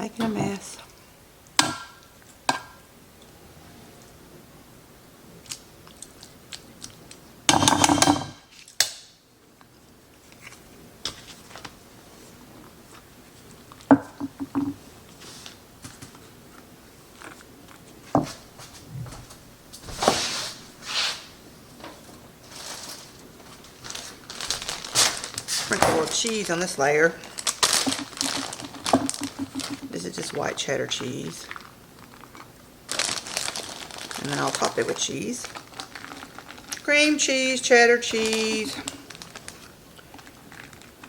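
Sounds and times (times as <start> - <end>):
utensil knocking against dish: 13.9 - 14.8, 27.8 - 29.9
rustling: 21.9 - 30.1.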